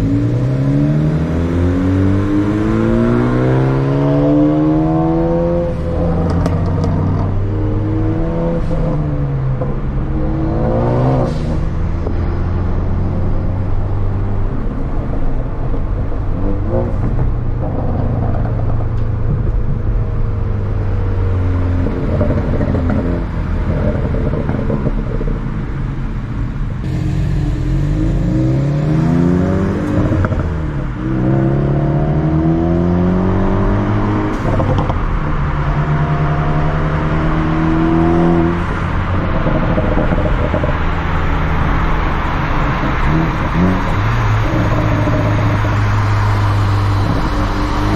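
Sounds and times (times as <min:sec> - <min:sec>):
car engine revving: 0:00.0 - 0:19.8, 0:26.8 - 0:47.9
exhaust cracks: 0:38.6 - 0:47.9.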